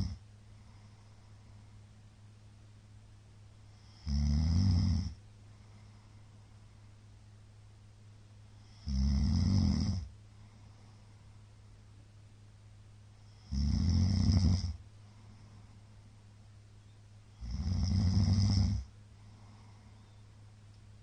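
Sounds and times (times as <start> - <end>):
man snoring loudly: 0.0 - 0.2, 3.8 - 5.2, 8.6 - 10.1, 13.3 - 14.8, 17.4 - 18.9.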